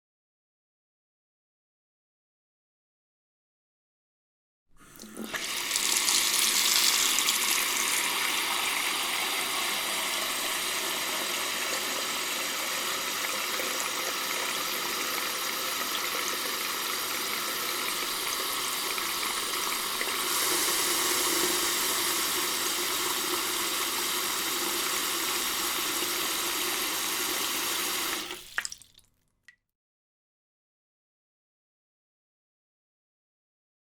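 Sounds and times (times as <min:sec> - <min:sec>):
water drip: 0:28.2 - 0:29.6.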